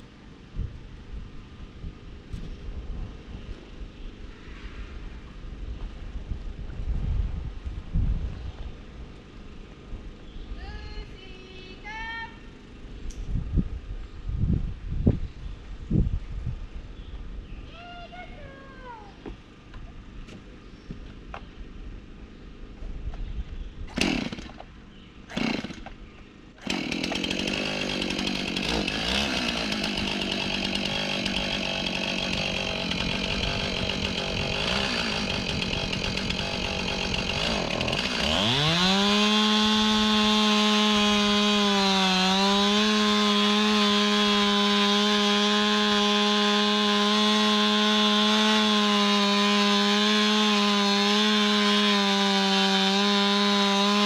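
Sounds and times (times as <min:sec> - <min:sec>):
chainsaw cutting wood: 0:23.9 - 0:24.7, 0:25.3 - 0:54.0.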